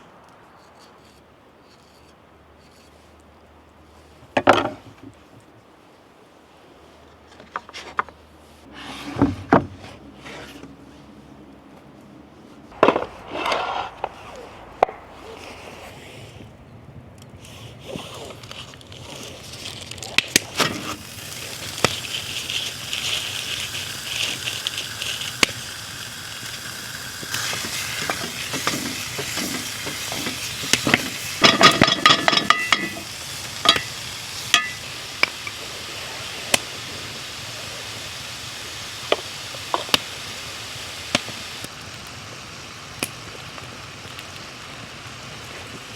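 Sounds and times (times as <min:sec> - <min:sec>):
food sizzling in a pan: 0:20.4 - 0:45.9
metallic clatter: 0:28.1 - 0:33.9
utensil knocking on pan: 0:28.5 - 0:33.9.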